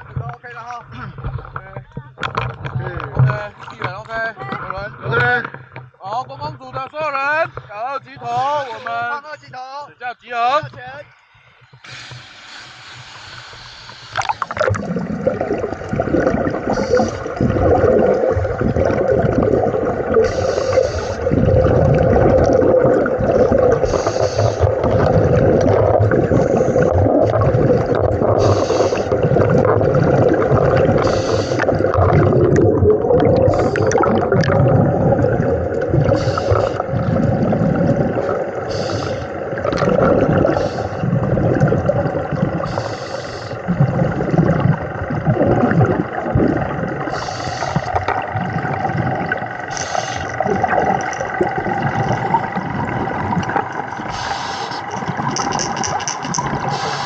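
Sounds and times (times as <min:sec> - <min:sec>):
underwater bubbles gurgling: 0:00.0 - 0:04.0, 0:11.7 - 0:57.0
breathing hisses: 0:11.8 - 0:14.5, 0:16.7 - 0:17.4, 0:20.2 - 0:21.4, 0:23.8 - 0:24.8, 0:28.4 - 0:29.2, 0:31.0 - 0:31.9, 0:33.4 - 0:34.0, 0:36.1 - 0:36.9, 0:38.7 - 0:39.4, 0:40.4 - 0:41.2, 0:42.6 - 0:43.7, 0:47.1 - 0:48.0, 0:49.7 - 0:50.5, 0:54.1 - 0:55.0, 0:56.7 - 0:57.0.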